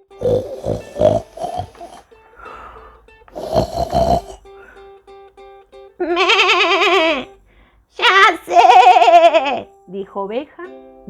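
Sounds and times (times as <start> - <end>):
person imitating snoring: 0.0 - 4.7
soft plucked-string music: 2.0 - 3.4, 4.4 - 11.0.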